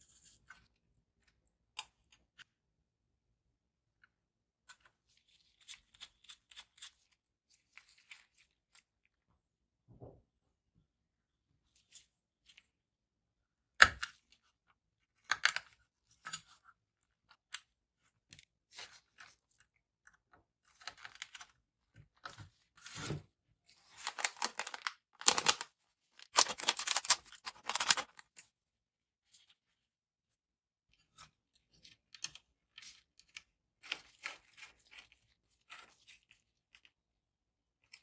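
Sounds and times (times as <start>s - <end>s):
packaging crinkling: 24.0s - 28.2s.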